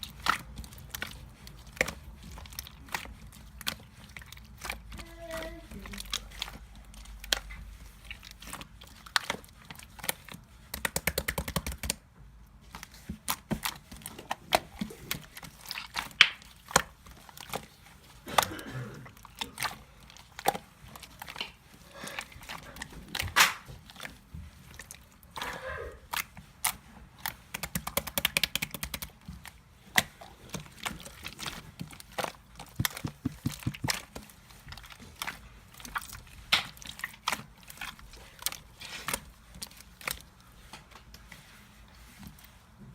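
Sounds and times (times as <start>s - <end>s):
slime sticky clicks and crackles: 6.0s - 12.0s, 12.7s - 17.8s, 26.1s - 41.2s.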